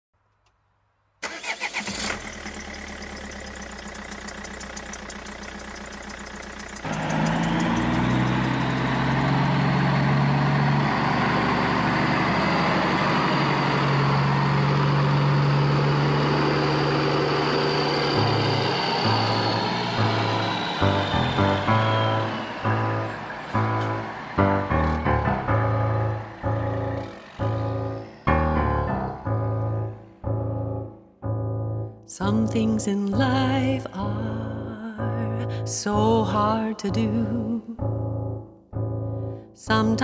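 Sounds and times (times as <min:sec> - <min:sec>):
car engine cranking and idling: 0:01.2 - 0:31.0.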